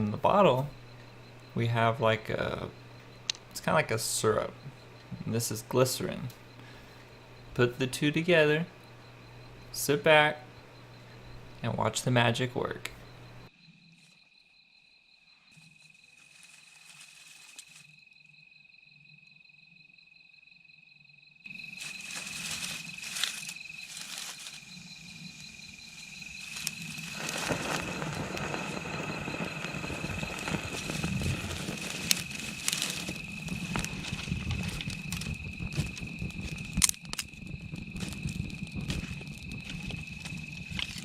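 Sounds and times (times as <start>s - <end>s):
insects trilling: 0.0s - 41.0s
rustling hiss with clicks: 16.2s - 17.8s, 21.8s - 24.8s, 25.9s - 37.3s.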